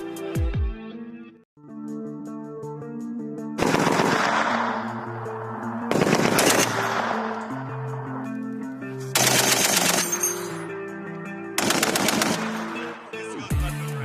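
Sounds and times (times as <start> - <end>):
background music of held notes: 0.0 - 14.0
machine gun bursts: 3.6 - 4.4, 5.9 - 7.2, 9.2 - 10.4, 11.6 - 12.9.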